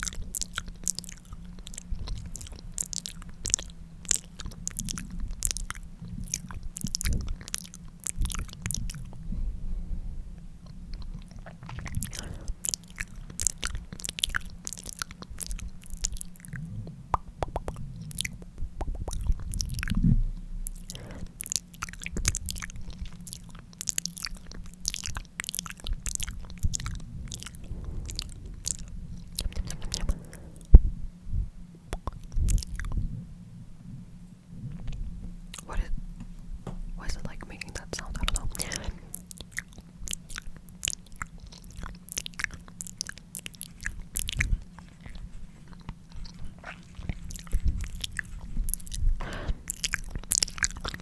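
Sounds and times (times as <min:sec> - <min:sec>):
wet lip smacks and clicks: 0:00.0 - 0:09.2, 0:10.6 - 0:30.7, 0:31.9 - 0:33.0, 0:34.8 - 0:36.3, 0:37.0 - 0:51.0
lip pop: 0:17.1 - 0:17.8.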